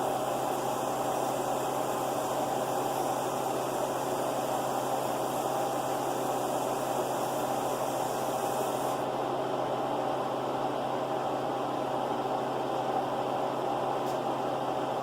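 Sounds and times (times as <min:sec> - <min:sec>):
machinery hum and hiss: 0:00.0 - 0:15.0.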